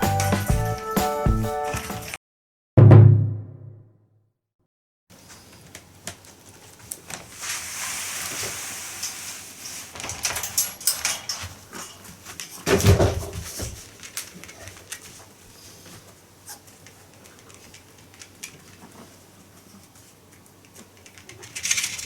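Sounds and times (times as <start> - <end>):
loud bump: 2.8 - 3.8
rustling: 5.2 - 22.0
dog claws clicking on floor: 16.5 - 19.0.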